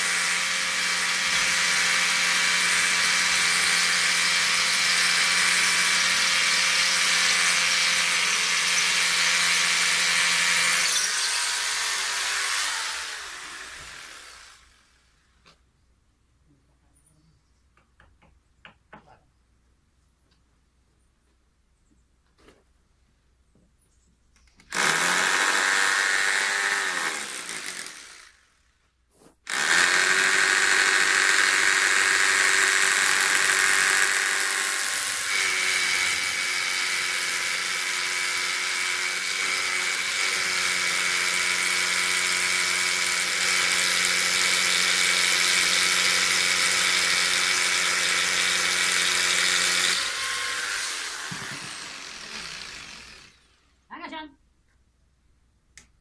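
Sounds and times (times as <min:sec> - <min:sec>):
power tool motor whining: 0:00.0 - 0:15.0, 0:24.7 - 0:28.4, 0:29.5 - 0:53.7.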